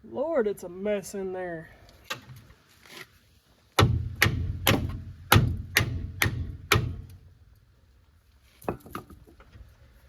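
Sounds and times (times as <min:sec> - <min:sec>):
hammer striking bolt: 0:03.8 - 0:07.2.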